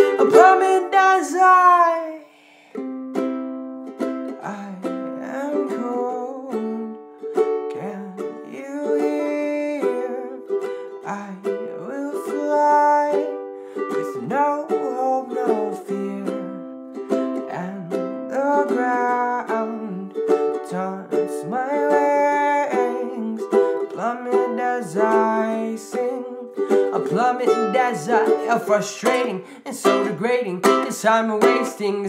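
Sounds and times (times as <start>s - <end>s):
person singing: 0.0s - 3.2s, 3.8s - 32.0s
ukulele strumming: 0.0s - 32.0s.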